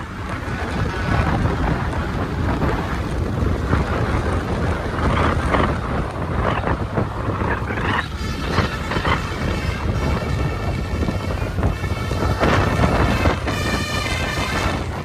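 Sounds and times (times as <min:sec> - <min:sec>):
bus engine rumble: 0:00.0 - 0:15.0
wind buffeting microphone: 0:00.0 - 0:15.0.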